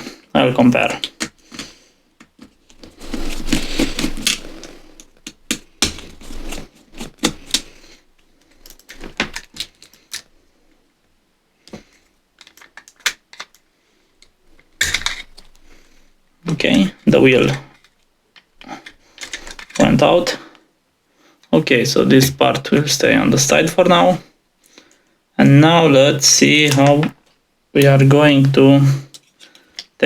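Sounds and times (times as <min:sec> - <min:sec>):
plastic parts scraping: 0:00.8 - 0:10.3, 0:11.7 - 0:20.6.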